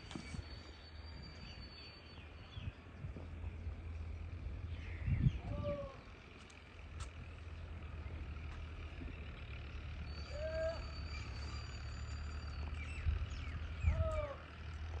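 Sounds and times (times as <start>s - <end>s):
steady low rumble: 0.0s - 9.4s
bird calls: 7.6s - 14.7s
faint bird chirps: 10.0s - 14.3s.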